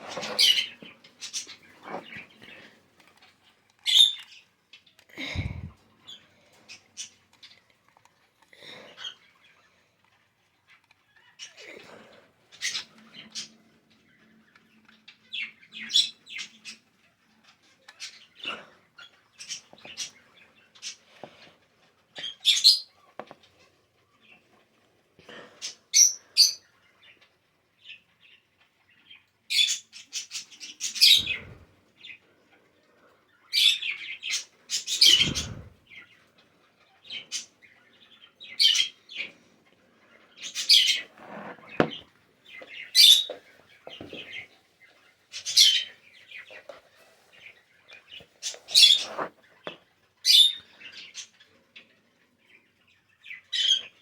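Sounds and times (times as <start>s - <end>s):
bird chirping: 0.0s - 2.8s, 3.8s - 7.6s, 33.4s - 36.2s, 36.8s - 39.4s, 40.1s - 54.0s.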